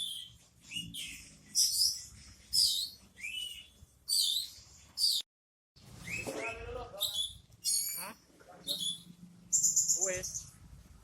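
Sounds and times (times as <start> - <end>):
bird singing whistled phrases: 2.6 - 5.2, 6.0 - 10.4.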